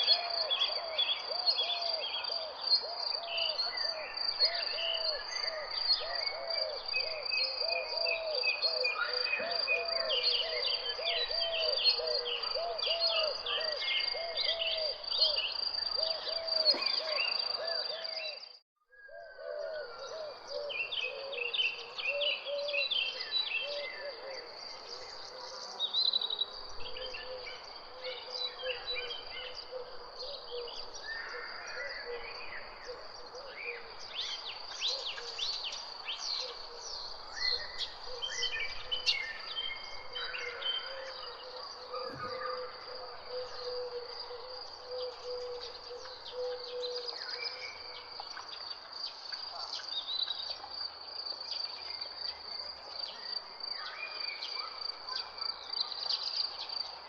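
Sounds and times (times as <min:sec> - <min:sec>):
birds chirping: 0:19.3 - 0:50.7.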